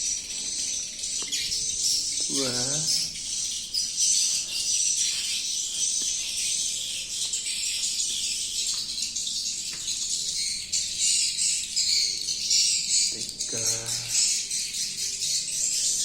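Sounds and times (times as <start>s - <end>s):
swiftlets twittering: 12.0s - 14.7s.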